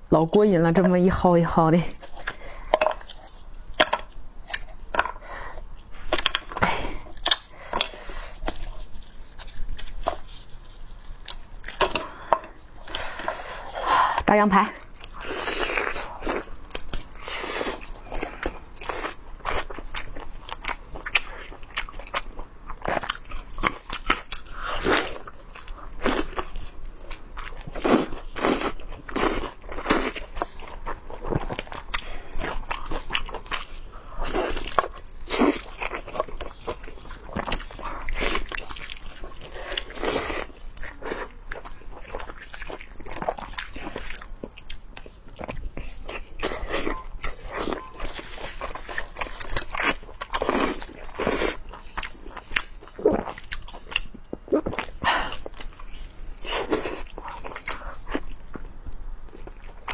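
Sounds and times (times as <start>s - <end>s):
wet crunching and smacking: 2.0s - 13.8s, 14.8s - 59.9s
person chewing meat: 2.0s - 59.9s.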